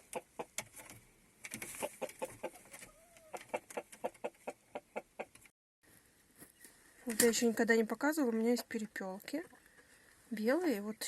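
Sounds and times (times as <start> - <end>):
chickens clucking: 0.0 - 0.7, 1.6 - 5.5.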